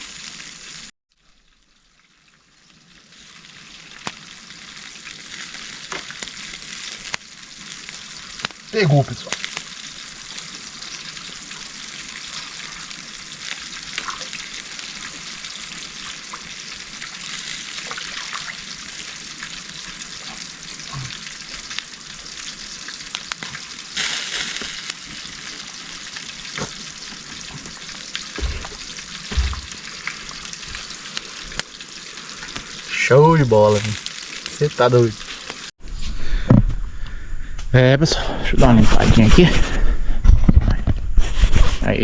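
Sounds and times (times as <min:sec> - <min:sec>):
fish sizzling in hot oil: 0:00.0 - 0:35.8
low thumps: 0:28.4 - 0:29.9.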